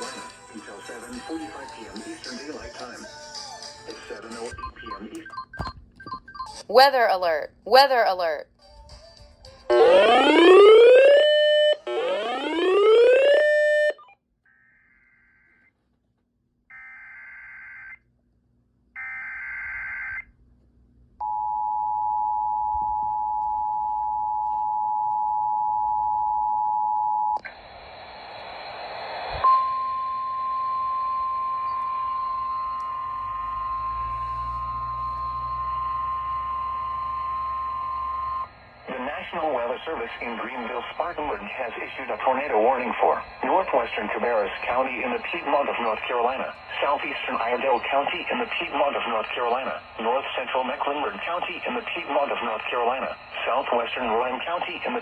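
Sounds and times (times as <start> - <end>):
steady alert tone: 6.7 - 8.4, 9.7 - 14.0
rising electronic sweeps: 9.7 - 14.0
two-tone attention signal: 9.7 - 14.0, 29.5 - 38.5
data tone bursts: 29.6 - 55.0
radio static: 38.8 - 55.0.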